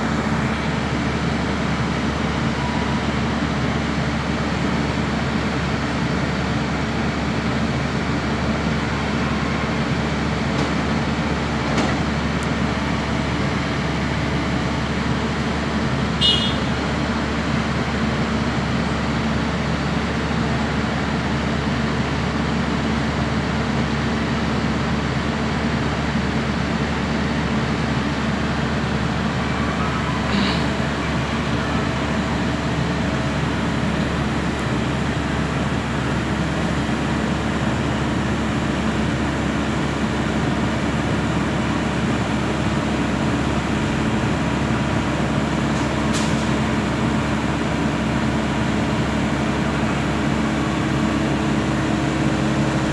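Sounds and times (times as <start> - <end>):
heavy diesel engine running: 0.0 - 52.9.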